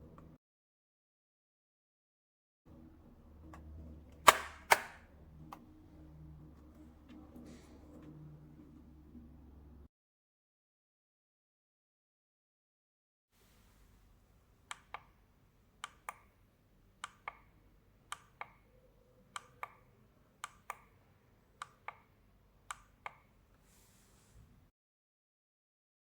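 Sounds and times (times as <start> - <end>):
button double clicks: 4.2 - 5.0
faint hiss: 23.6 - 24.7.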